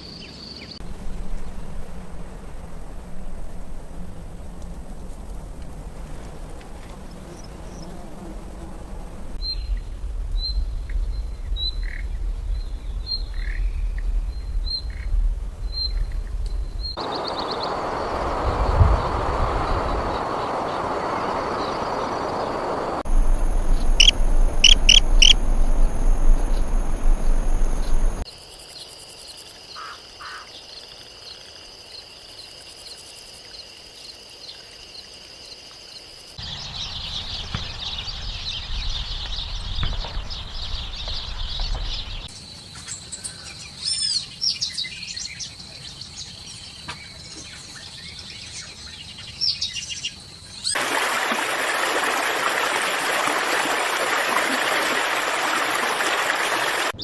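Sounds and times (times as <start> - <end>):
insects droning: 0.0 - 57.0
low rumble: 9.2 - 28.2
birds chirping and singing: 23.5 - 28.2.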